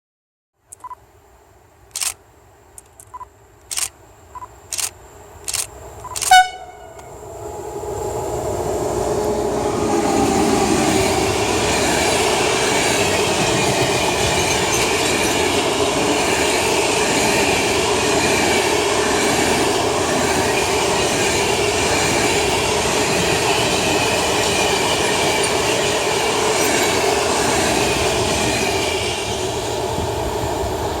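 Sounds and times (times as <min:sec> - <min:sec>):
sharp clicks: 0:01.9 - 0:04.0, 0:04.7 - 0:07.1
freight train rolling past: 0:05.3 - 0:31.0.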